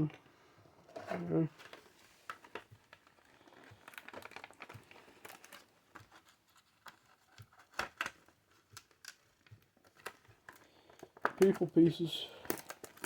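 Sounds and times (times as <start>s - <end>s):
packaging crinkling: 1.0s - 13.0s.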